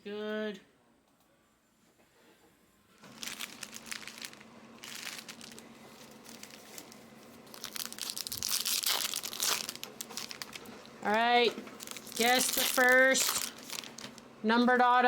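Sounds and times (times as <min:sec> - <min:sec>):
plastic wrapping crinkling and tearing: 0:03.0 - 0:14.2.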